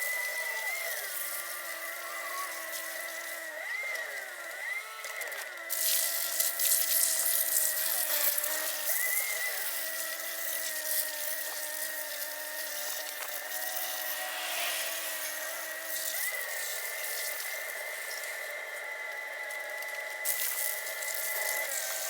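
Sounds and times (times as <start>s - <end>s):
pressure washer whining: 0.0s - 22.0s
water spray hissing: 12.8s - 17.4s.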